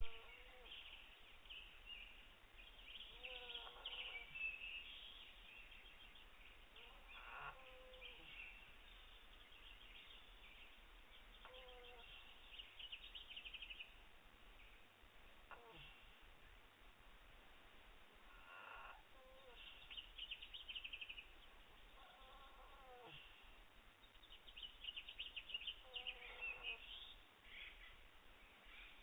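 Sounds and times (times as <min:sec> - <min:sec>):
small birds chirping: 0:00.0 - 0:16.7, 0:18.2 - 0:29.0
bird chick snoring faintly: 0:06.8 - 0:08.2, 0:15.5 - 0:16.2, 0:18.3 - 0:19.8, 0:21.9 - 0:23.5.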